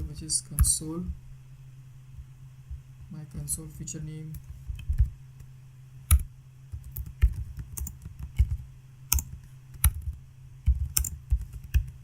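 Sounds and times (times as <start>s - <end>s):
steady low hum: 0.0s - 12.0s
typing on computer keyboard: 6.1s - 12.0s.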